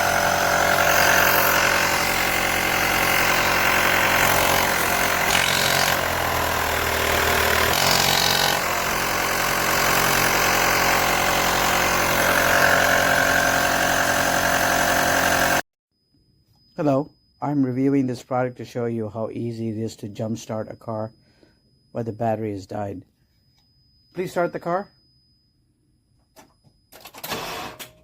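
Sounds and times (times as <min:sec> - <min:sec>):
motor humming: 0:00.0 - 0:15.6.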